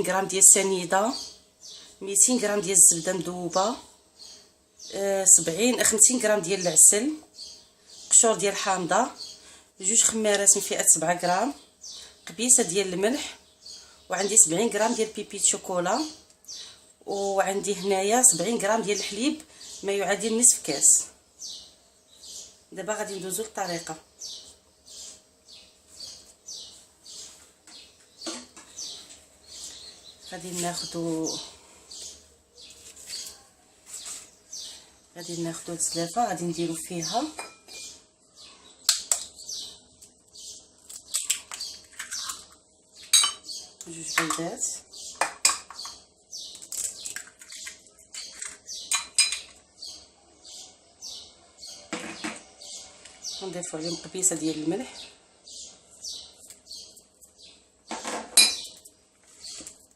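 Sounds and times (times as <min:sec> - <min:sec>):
small bird chirping: 0:18.3 - 0:59.9.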